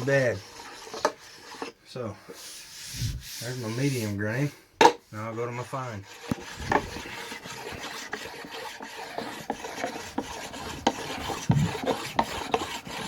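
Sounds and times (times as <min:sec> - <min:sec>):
stone rasping on wood: 0:00.0 - 0:01.8, 0:06.0 - 0:13.0.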